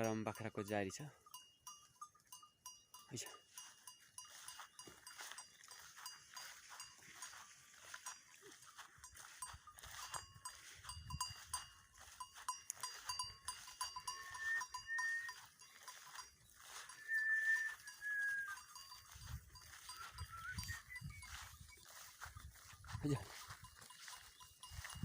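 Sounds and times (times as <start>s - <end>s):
goat bells clinking: 0.0s - 25.0s
high whistled notes: 14.0s - 15.5s, 16.7s - 18.8s, 19.8s - 21.4s.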